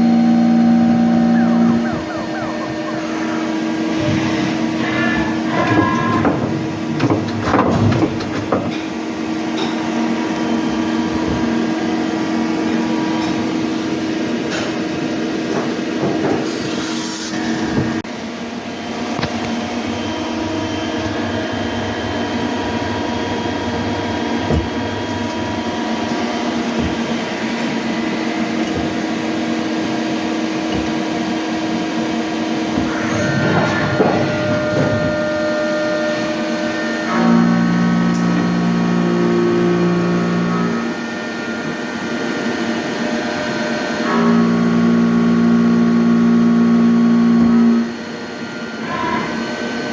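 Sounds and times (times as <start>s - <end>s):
steady machine tones: 0.0s - 14.2s, 17.5s - 49.9s
machine clicks and knocks: 18.0s - 37.2s
lathe machine hum: 18.0s - 49.9s.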